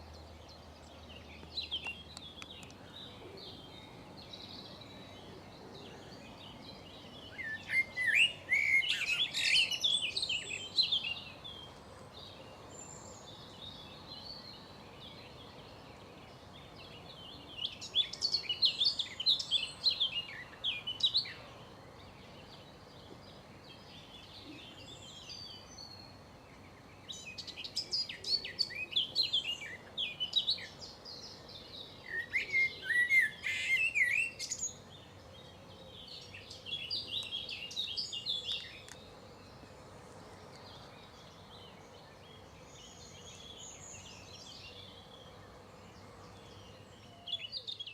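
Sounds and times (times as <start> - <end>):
songbird singing: 0.0 - 47.9.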